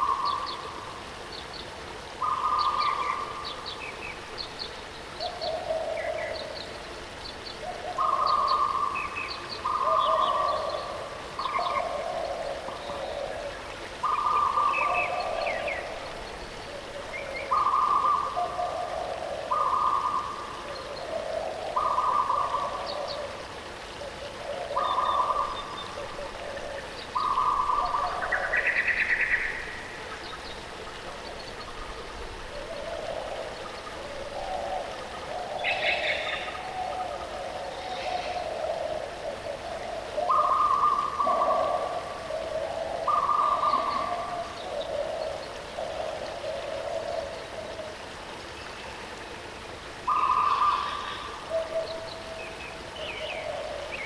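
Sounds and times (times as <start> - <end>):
running water: 0.0 - 54.0
birds calling: 24.4 - 47.7, 50.1 - 54.0.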